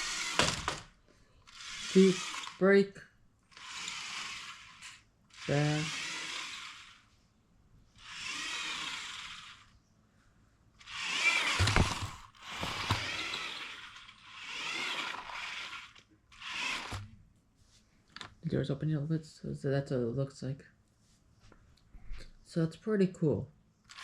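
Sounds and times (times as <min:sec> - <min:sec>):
toy car motor whining: 0:00.0 - 0:02.9, 0:03.5 - 0:07.1, 0:07.9 - 0:09.8, 0:10.8 - 0:17.1.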